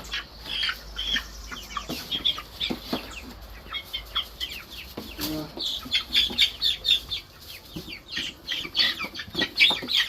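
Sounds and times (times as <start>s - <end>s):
young chickens peeping: 0.0s - 10.0s.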